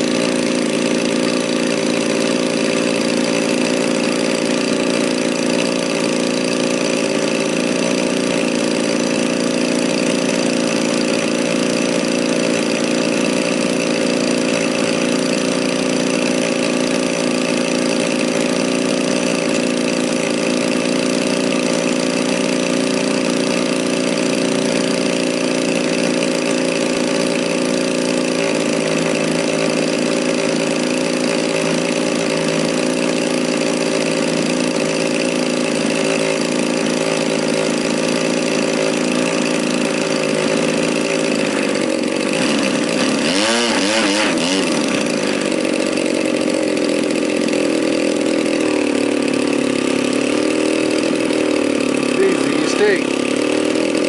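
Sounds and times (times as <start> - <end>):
model plane engine running: 0.0 - 54.0.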